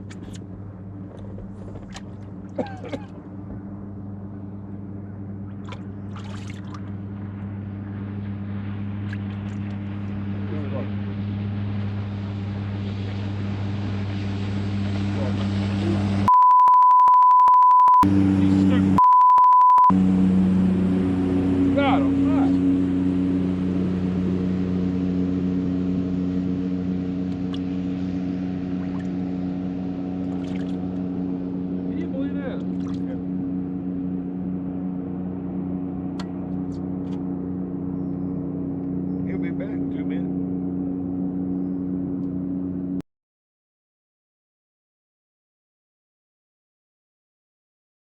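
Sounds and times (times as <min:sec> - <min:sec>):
water splashing: 0:00.0 - 0:03.2, 0:05.4 - 0:07.3, 0:08.0 - 0:16.2, 0:20.0 - 0:31.9, 0:32.6 - 0:37.5
boat motor humming: 0:00.0 - 0:43.0.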